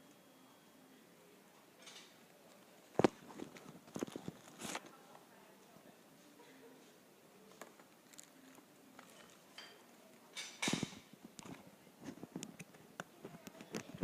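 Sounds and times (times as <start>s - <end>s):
packaging rustling: 3.0s - 4.9s.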